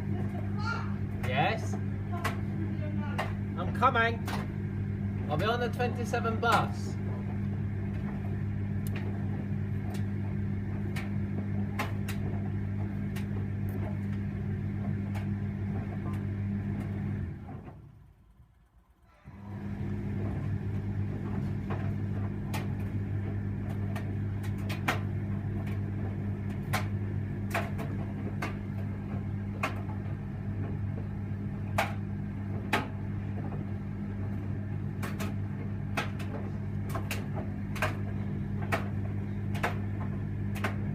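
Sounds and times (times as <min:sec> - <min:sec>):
tumble dryer motor hum: 0:00.0 - 0:40.9.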